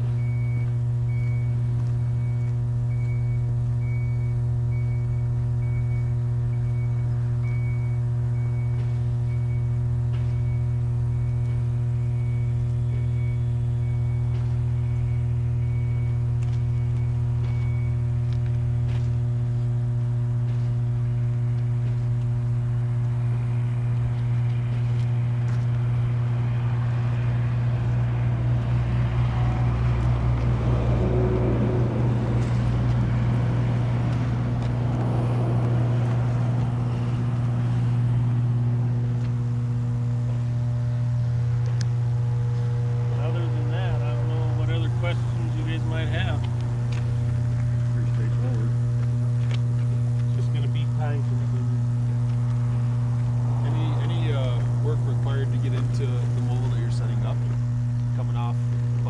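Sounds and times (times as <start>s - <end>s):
electrical hum of transformers: 0.0s - 59.0s
faint repeating beep: 0.2s - 18.0s.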